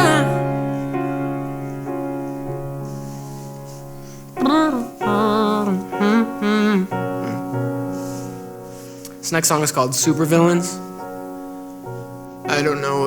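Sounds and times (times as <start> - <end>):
wordless vocal run with vibrato: 0.0 - 0.4
piano chords ringing: 0.0 - 13.0.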